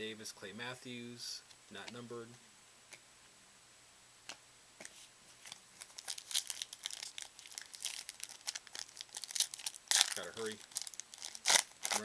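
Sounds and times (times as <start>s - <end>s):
wrapper crinkling: 5.4s - 12.0s.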